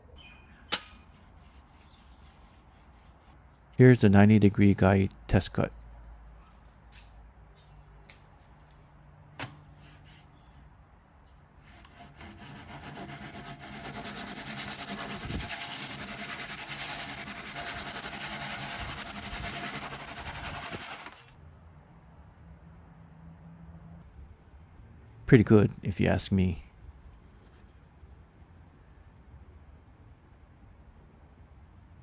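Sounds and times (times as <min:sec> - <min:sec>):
hand saw cutting wood: 0:11.6 - 0:21.4.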